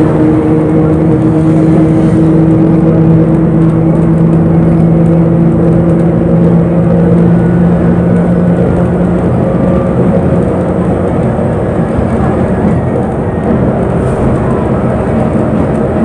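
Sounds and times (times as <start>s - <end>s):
bus engine droning: 0.0s - 16.0s
road rumble: 8.5s - 16.0s.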